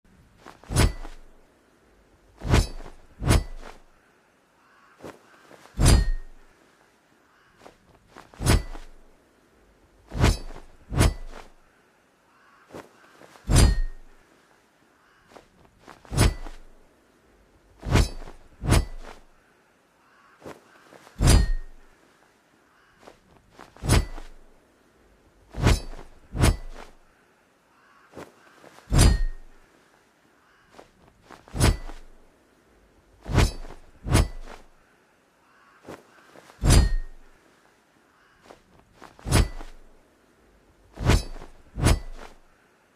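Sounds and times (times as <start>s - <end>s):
metal blade strikes: 0.7s - 1.2s, 2.4s - 3.8s, 5.8s - 6.4s, 8.4s - 9.0s, 13.5s - 14.1s, 16.1s - 16.6s, 21.2s - 21.8s, 23.8s - 24.4s, 25.6s - 26.9s, 28.9s - 29.5s, 31.6s - 32.1s, 33.3s - 34.7s, 36.6s - 37.3s, 39.3s - 39.8s, 41.0s - 42.4s.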